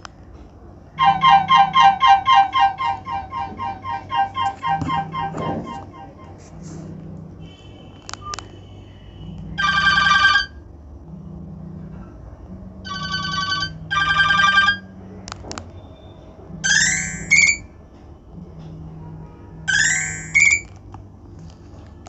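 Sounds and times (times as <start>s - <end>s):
electronic phone ringtone: 1.0s - 5.8s, 9.6s - 10.6s, 12.8s - 15.0s, 16.6s - 17.6s, 19.7s - 20.7s.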